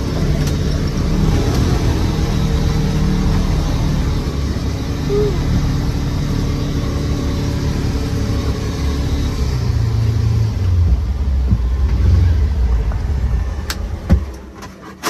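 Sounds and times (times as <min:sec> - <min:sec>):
vehicle engine humming: 0:00.0 - 0:14.8.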